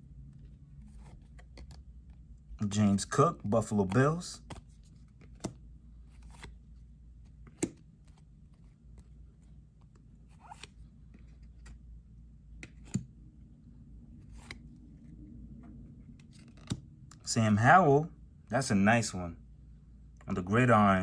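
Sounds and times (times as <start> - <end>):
cards sliding and rustling: 0.8 - 2.2, 3.6 - 11.9, 14.1 - 15.1, 16.1 - 16.8.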